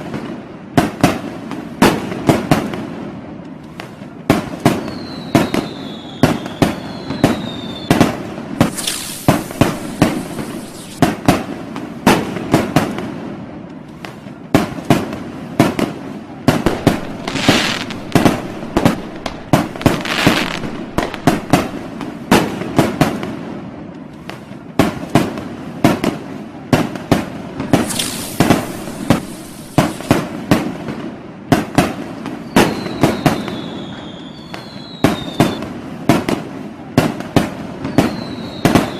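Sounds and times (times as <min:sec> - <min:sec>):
fireworks and firecrackers banging: 0:00.0 - 0:38.9
falling firework whistles: 0:04.6 - 0:11.3, 0:16.5 - 0:23.0, 0:27.6 - 0:30.8, 0:32.1 - 0:35.8, 0:37.7 - 0:38.9
crackling hiss: 0:04.9 - 0:11.2, 0:16.5 - 0:23.0, 0:27.5 - 0:30.8.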